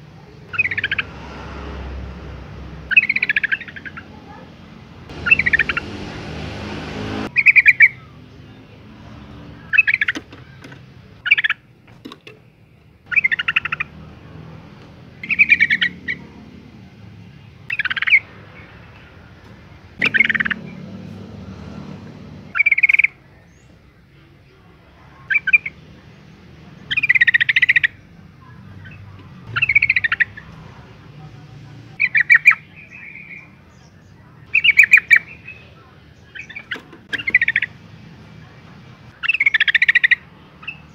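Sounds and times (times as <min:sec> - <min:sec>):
bird chattering call: 0:02.9 - 0:04.2, 0:05.1 - 0:06.3, 0:13.1 - 0:14.0, 0:15.2 - 0:16.3, 0:17.7 - 0:18.3, 0:20.0 - 0:20.8, 0:26.9 - 0:28.0, 0:28.9 - 0:30.5, 0:34.5 - 0:35.6, 0:36.3 - 0:37.8, 0:39.2 - 0:40.8.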